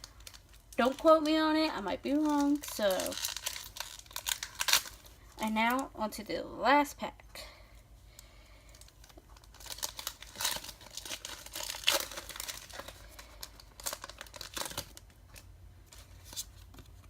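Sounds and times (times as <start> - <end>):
foil wrapper tearing and crinkling: 0.0 - 5.8, 8.7 - 16.5.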